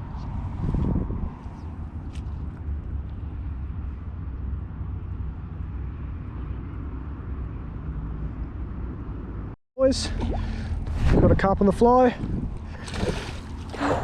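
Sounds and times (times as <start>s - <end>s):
wind buffeting microphone: 0.0s - 2.0s, 10.8s - 14.0s.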